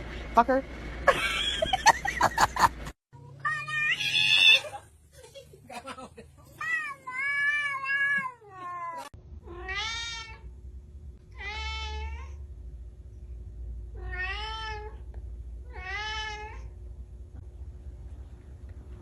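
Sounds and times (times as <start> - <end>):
cat meowing: 3.2 - 4.6, 6.6 - 10.4, 11.3 - 12.4, 15.7 - 16.7.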